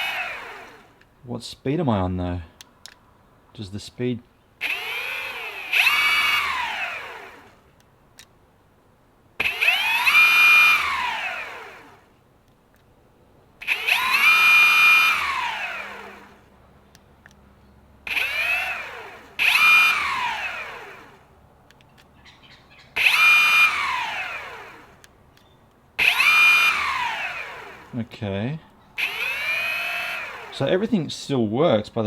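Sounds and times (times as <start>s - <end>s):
electric skateboard motor whine: 0.0s - 1.0s, 4.6s - 7.6s, 9.4s - 12.1s, 13.6s - 16.5s, 18.0s - 21.3s, 23.0s - 25.1s, 26.0s - 28.0s, 29.0s - 30.7s.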